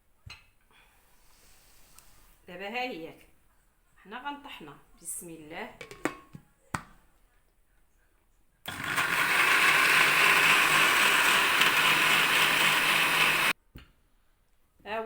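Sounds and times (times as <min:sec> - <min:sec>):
electric blender running: 0:08.7 - 0:13.6.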